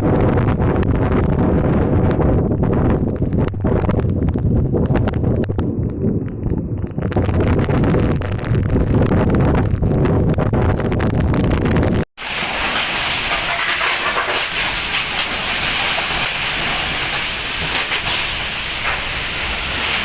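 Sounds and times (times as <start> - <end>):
wind rumble on microphone: 0.0 - 20.0
heavy rain pouring: 12.2 - 20.0.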